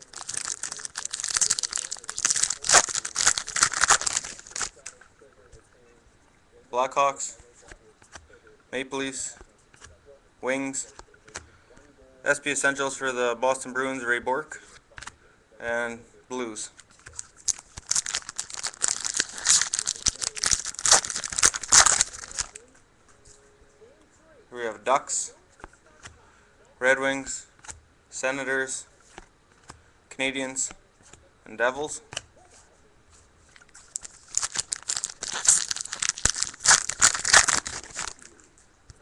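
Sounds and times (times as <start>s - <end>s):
wrapper crinkling and tearing: 0.0s - 5.0s, 17.0s - 22.6s, 33.6s - 38.5s.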